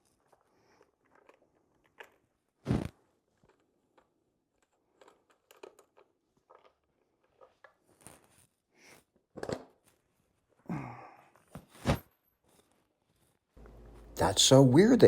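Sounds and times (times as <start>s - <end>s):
person grunting with effort: 10.7s - 11.2s.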